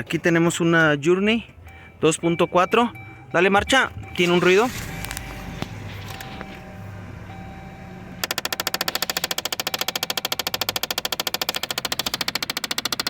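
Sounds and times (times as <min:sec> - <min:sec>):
low engine idle hum: 0:00.0 - 0:11.0
actuator clicking rapidly: 0:08.2 - 0:13.0.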